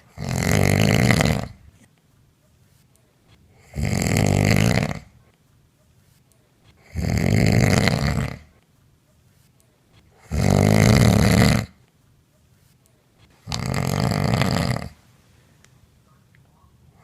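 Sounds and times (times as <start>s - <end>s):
woman snoring: 0.0s - 1.6s, 3.5s - 5.2s, 6.8s - 8.5s, 10.2s - 11.8s, 13.4s - 15.0s.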